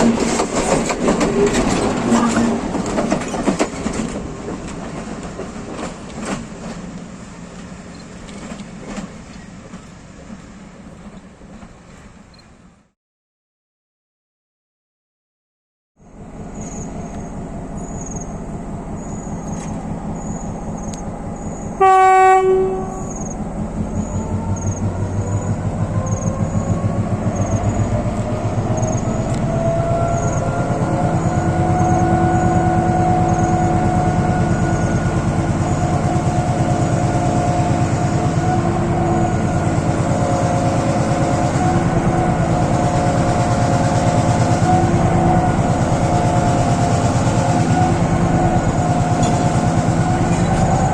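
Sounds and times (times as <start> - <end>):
locomotive diesel engine running: 16.0 - 50.9
loud horn blast: 21.8 - 23.1, 37.1 - 42.9, 44.4 - 50.9.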